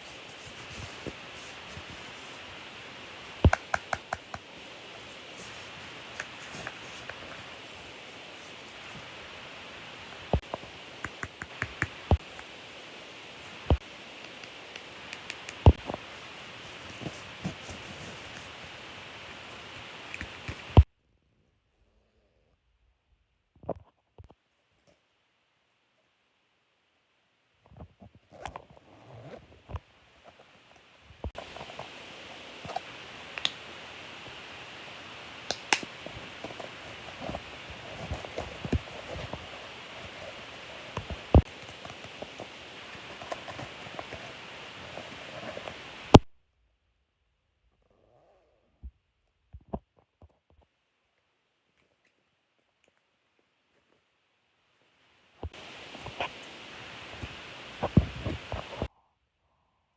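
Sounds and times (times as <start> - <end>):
steady hiss: 0.0 - 20.9, 29.3 - 46.3, 53.7 - 58.9
small objects clicking and tapping: 3.4 - 4.5, 10.4 - 12.2, 14.2 - 15.8.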